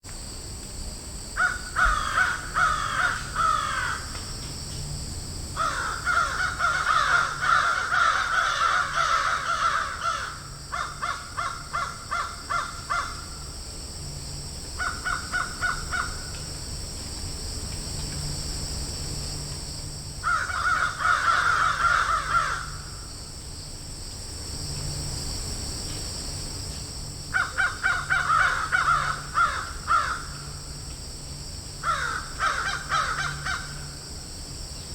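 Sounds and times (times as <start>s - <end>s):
steady high hiss: 0.0s - 34.9s
crows cawing: 1.4s - 4.2s, 5.6s - 13.4s, 14.8s - 16.3s, 20.2s - 23.0s, 27.3s - 30.6s, 31.8s - 33.9s.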